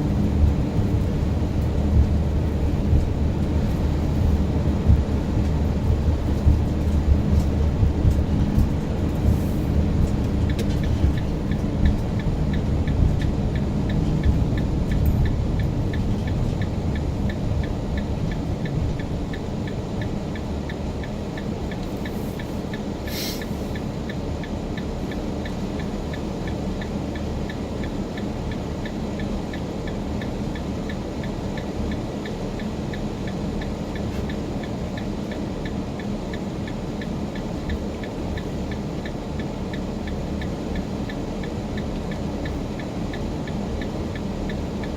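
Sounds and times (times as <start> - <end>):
car engine and road noise: 0.0 - 44.9
faint ticking: 0.1 - 29.6, 33.6 - 44.9
brief hiss: 22.2 - 23.7.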